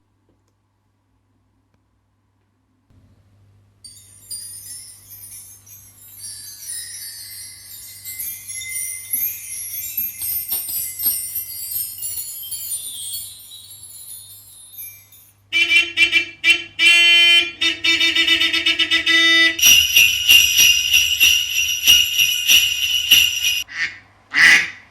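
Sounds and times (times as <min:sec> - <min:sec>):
pitched bell ringing runs: 0:03.8 - 0:15.5, 0:19.6 - 0:23.6
small bells tinkling: 0:03.8 - 0:15.5, 0:19.6 - 0:23.7.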